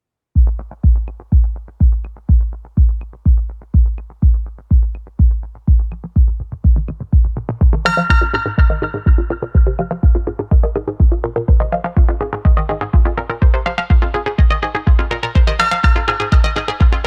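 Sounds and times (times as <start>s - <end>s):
heavy kick drum: 0.4s - 17.0s
synthesizer melody: 7.0s - 17.0s.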